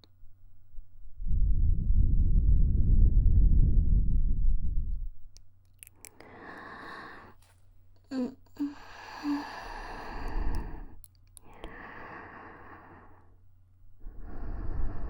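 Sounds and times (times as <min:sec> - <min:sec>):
woman sighing breaths: 0:08.1 - 0:13.2.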